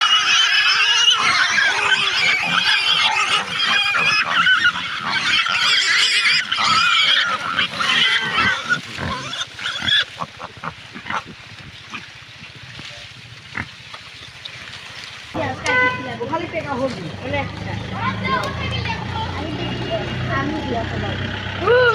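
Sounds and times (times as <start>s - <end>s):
pigs squealing: 0.0s - 12.2s, 13.5s - 14.4s.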